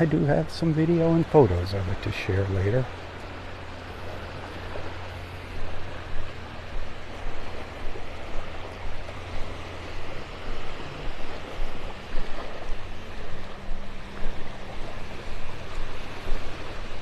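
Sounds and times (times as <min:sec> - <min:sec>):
small waves washing: 0:00.0 - 0:17.0
wind on microphone: 0:03.4 - 0:17.0.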